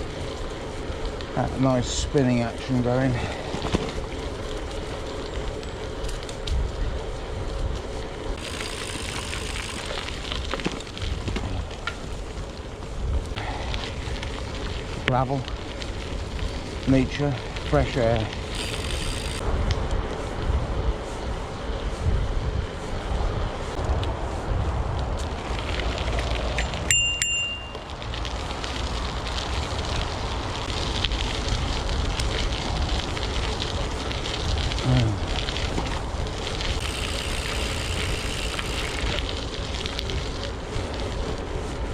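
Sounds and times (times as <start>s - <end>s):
bike tyres rolling over gravel: 0.0s - 41.9s
wind rumble on microphone: 0.0s - 41.9s
wind on microphone: 18.3s - 28.1s
bicycle bell ringing: 26.6s - 27.9s.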